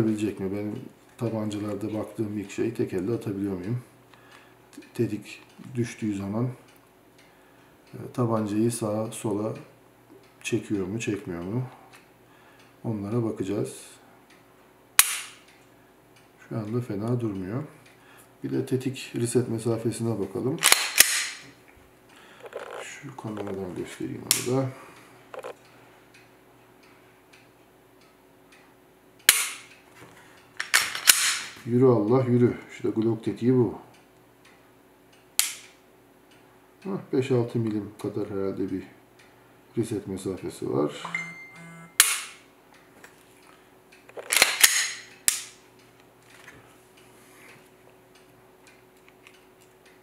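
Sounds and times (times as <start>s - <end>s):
pistol action clicking: 15.0s - 15.4s, 20.6s - 21.4s, 29.3s - 29.7s, 30.6s - 31.5s, 35.4s - 35.8s, 44.2s - 45.6s
pistol trigger clicking: 15.0s - 15.4s, 20.6s - 21.4s, 29.3s - 29.7s, 35.4s - 35.8s.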